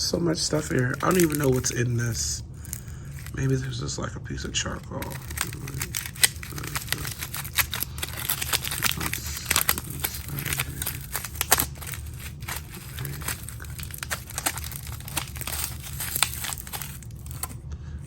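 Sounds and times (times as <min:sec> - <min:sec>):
steady low hum: 0:00.0 - 0:18.0
plastic packaging crinkling: 0:00.4 - 0:03.8, 0:04.8 - 0:17.7.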